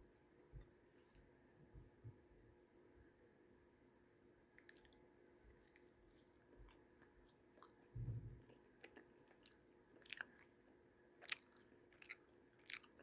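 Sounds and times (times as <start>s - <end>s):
crunchy chewing: 4.5s - 13.0s.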